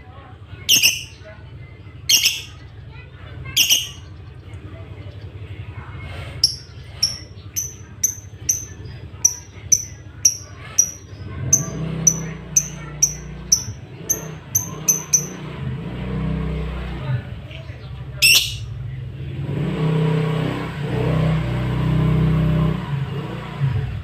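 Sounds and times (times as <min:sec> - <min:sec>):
lovebird chirping: 0:00.7 - 0:01.2, 0:02.1 - 0:02.6, 0:03.6 - 0:04.1, 0:06.4 - 0:15.4, 0:18.2 - 0:18.7.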